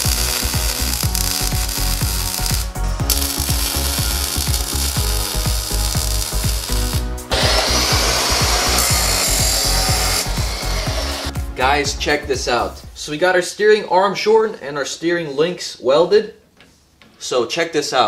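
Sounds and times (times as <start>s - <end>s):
music with thumping beat: 0.0s - 13.0s
power tool rushing noise: 5.7s - 11.3s
workshop tool noise: 7.3s - 11.3s.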